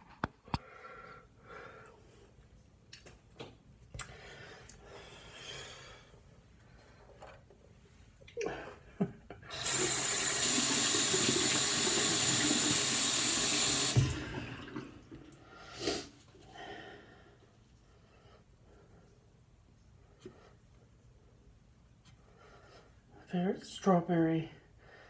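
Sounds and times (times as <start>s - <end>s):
tap water running: 9.5s - 16.1s.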